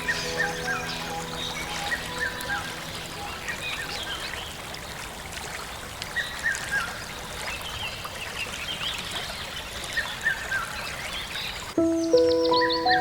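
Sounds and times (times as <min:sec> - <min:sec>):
small birds chirping: 0:00.0 - 0:05.0, 0:08.7 - 0:13.0
outdoor ambient hiss: 0:00.0 - 0:06.2.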